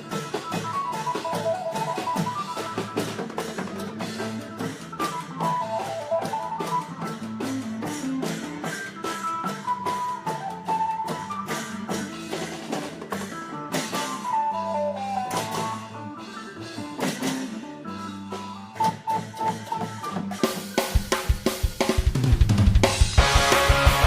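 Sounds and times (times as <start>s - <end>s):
long drums playing fast beat: 0.0s - 14.2s, 20.2s - 24.0s.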